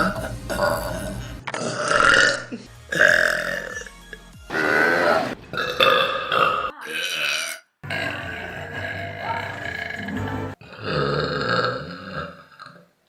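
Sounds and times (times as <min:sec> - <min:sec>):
people burping: 0:00.0 - 0:12.9.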